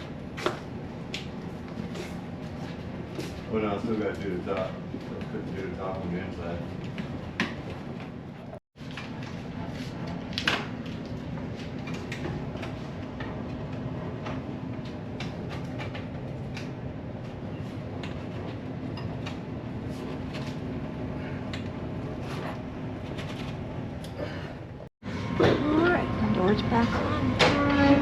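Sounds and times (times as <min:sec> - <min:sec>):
machine hum: 0:10.8 - 0:28.0.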